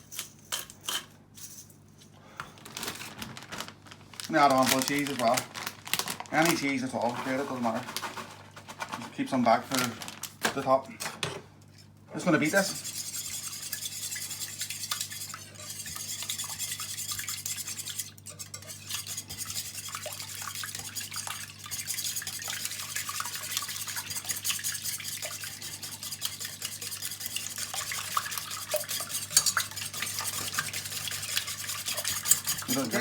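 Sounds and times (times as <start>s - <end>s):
whisk ticking against bowl: 12.4s - 33.0s.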